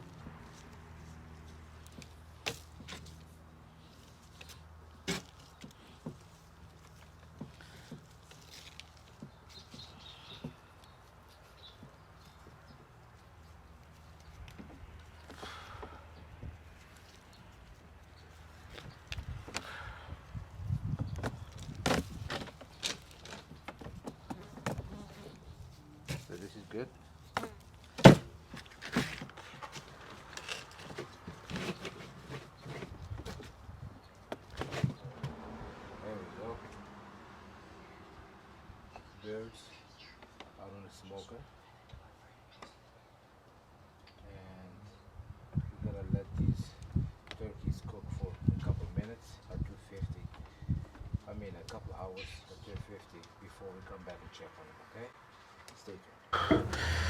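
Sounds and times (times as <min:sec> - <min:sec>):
small clatter and handling noises: 0:00.0 - 0:19.7, 0:20.9 - 0:35.4, 0:49.8 - 0:51.9.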